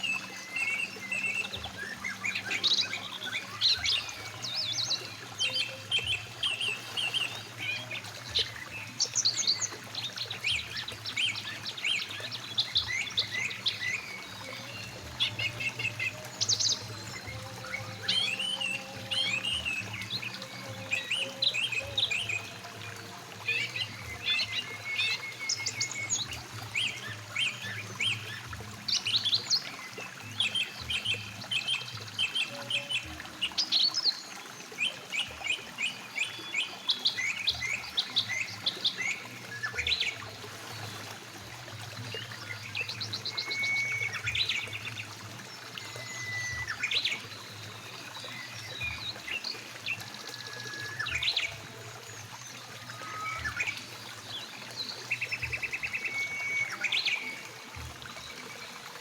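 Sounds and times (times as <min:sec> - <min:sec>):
birds chirping and trilling: 0:00.0 - 0:59.0
river flowing: 0:00.0 - 0:59.0.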